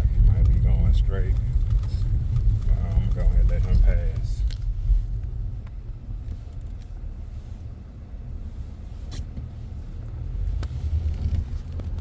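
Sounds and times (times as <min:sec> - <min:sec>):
car engine and tyres rumbling: 0:00.0 - 0:12.0.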